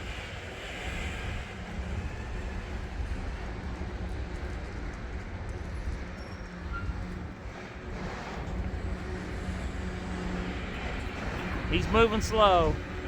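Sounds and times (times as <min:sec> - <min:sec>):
train rumbling slowly on tracks: 0:00.0 - 0:13.0.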